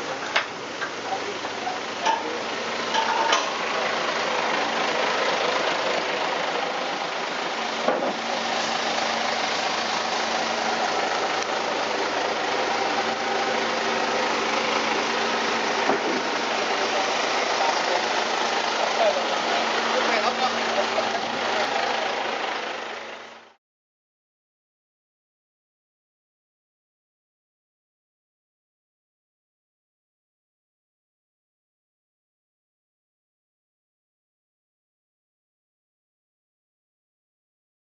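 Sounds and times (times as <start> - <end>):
heavy machine engine running: 0.0 - 23.6
knocks and clanks: 2.9 - 3.6, 7.8 - 8.3, 15.8 - 16.3.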